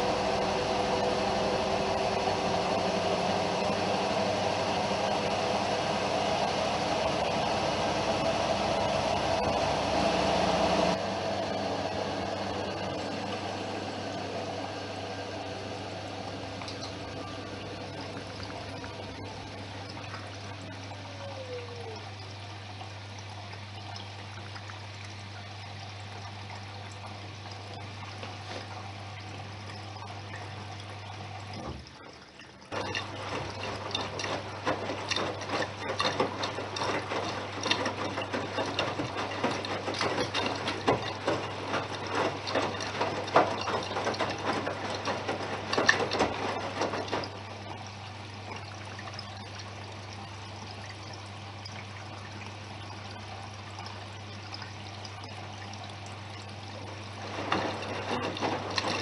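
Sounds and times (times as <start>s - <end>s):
washing machine humming: 0.0s - 59.0s
water splashing in washing machine: 0.0s - 59.0s.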